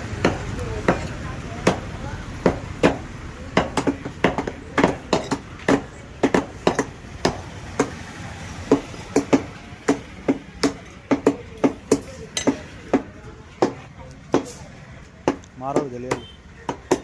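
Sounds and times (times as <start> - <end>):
cleaver chopping on a board: 0.2 - 8.0, 15.2 - 17.0.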